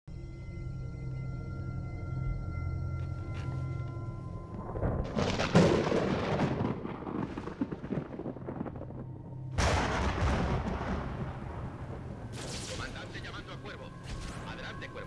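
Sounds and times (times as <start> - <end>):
loud boom: 9.6 - 13.1.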